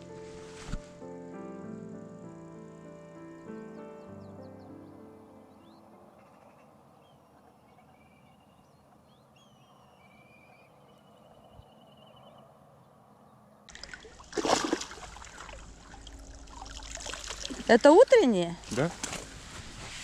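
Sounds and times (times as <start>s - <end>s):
faint bird chirps: 3.1s - 13.4s
water splashing and trickling: 13.7s - 19.2s.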